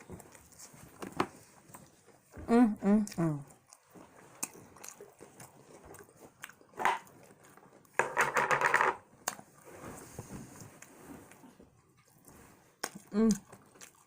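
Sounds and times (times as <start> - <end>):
chewing and crunching food: 0.0 - 8.0, 8.9 - 14.0.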